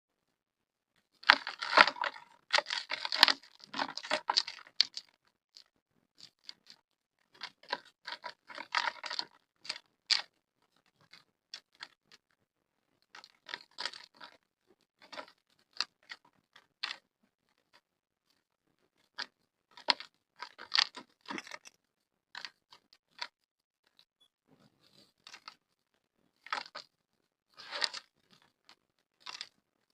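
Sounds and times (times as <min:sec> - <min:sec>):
dried mud crumbling and crackling: 0:01.1 - 0:12.3, 0:19.0 - 0:23.5, 0:24.9 - 0:29.8.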